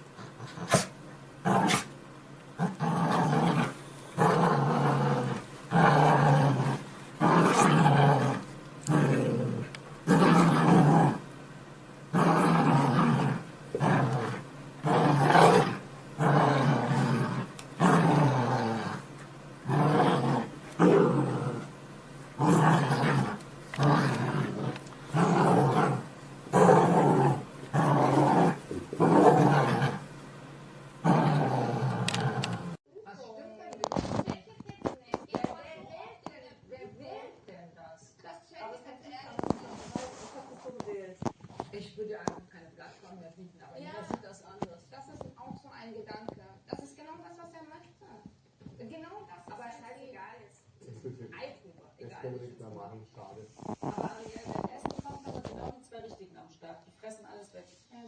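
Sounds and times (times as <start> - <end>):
dog growling: 0.2 - 1.9, 2.6 - 11.3, 12.1 - 21.7, 22.3 - 30.1, 31.0 - 32.8, 53.5 - 55.8.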